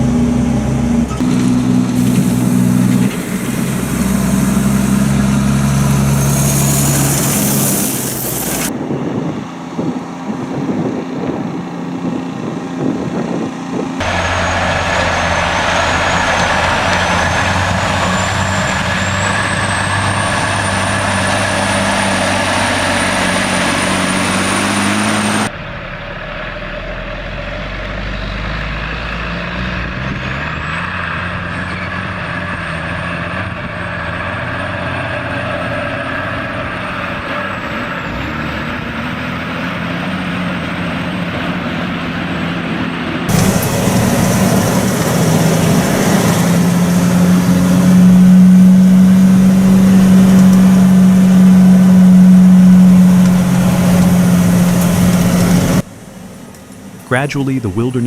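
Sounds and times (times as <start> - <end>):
truck engines running: 0.0 - 58.0
thin high whine: 1.1 - 8.7.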